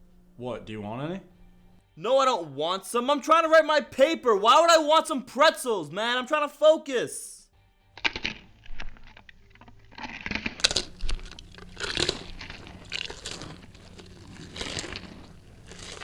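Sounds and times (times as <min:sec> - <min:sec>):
pretzels crunching: 0:08.0 - 0:16.0.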